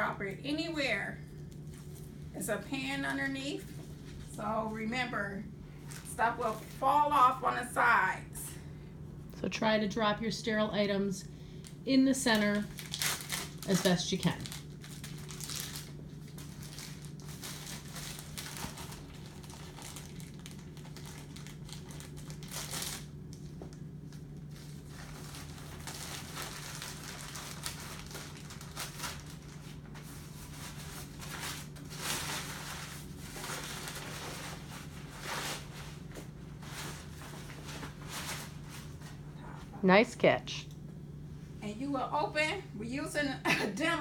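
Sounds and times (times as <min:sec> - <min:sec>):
steady low hum: 0:00.0 - 0:44.0
wrappers crinkling: 0:05.8 - 0:07.3, 0:11.6 - 0:39.3.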